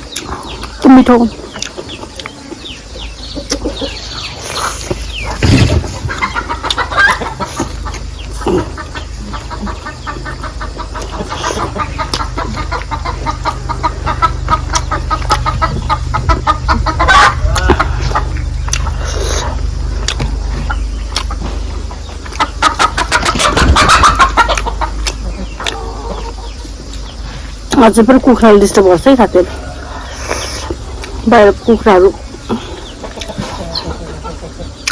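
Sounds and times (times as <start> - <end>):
chickens clucking: 0.0 - 34.9
steady low hum: 0.0 - 34.9.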